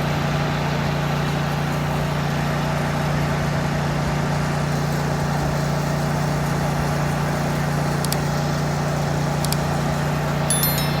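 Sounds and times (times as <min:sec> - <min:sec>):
high metallic tinkle: 0:10.5 - 0:11.0.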